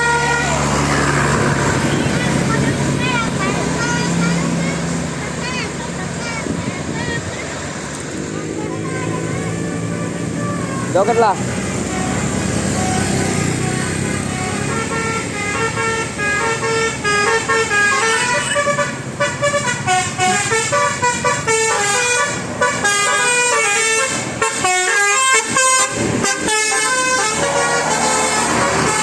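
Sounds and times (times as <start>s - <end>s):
musical air horn melody: 0.0s - 1.9s, 11.1s - 29.0s.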